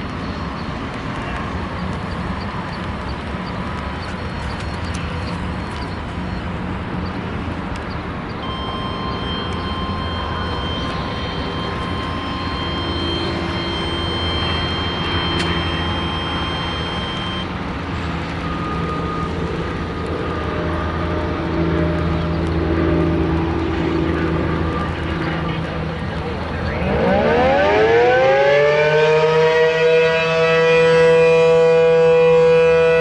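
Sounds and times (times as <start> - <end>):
traffic noise: 0.0 - 33.0
vehicle engine running: 1.2 - 26.8
low hum: 3.4 - 26.9
faint high whine: 7.9 - 26.9.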